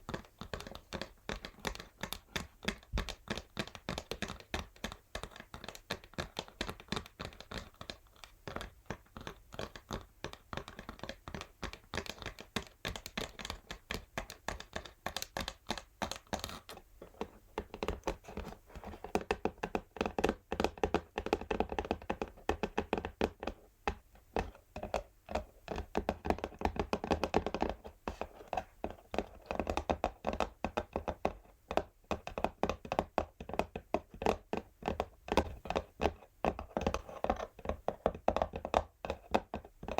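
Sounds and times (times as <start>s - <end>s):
fingernails tapping on cardboard: 0.1s - 39.9s
scratching on cardboard: 14.7s - 19.6s.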